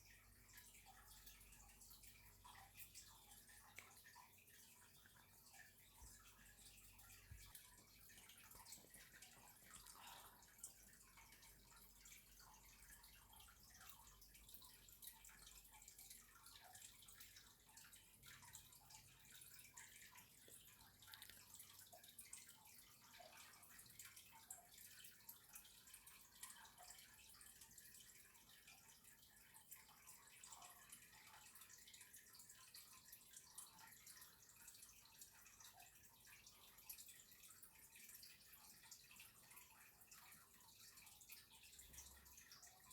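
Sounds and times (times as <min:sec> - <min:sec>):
soft ticks: 0:00.5 - 0:04.2, 0:18.2 - 0:22.5.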